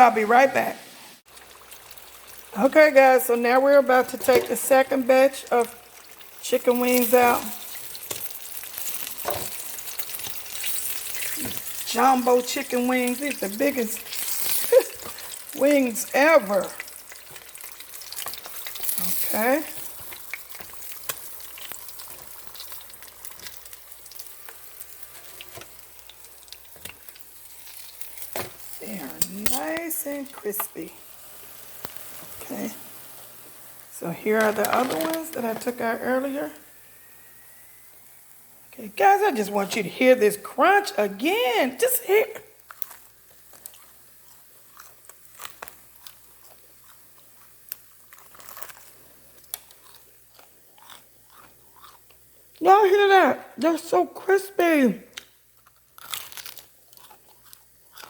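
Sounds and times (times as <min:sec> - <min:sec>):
wings sizzling in hot oil: 0:00.0 - 0:57.0
crunching of fried chicken chewed: 0:42.6 - 0:52.6, 0:55.2 - 0:58.0.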